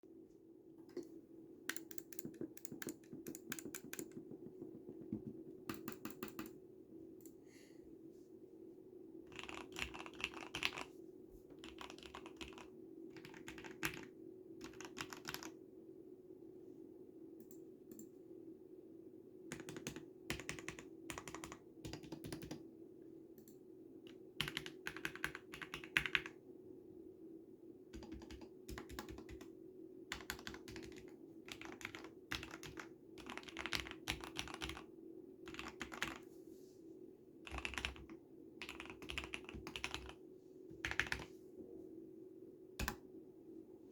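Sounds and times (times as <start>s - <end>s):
typing on mechanical keyboard: 1.7s - 6.6s, 9.3s - 10.9s, 11.6s - 15.6s, 19.5s - 22.6s, 24.1s - 26.4s, 27.9s - 29.5s, 30.1s - 34.9s, 35.5s - 36.2s, 37.5s - 40.2s, 40.8s - 41.3s.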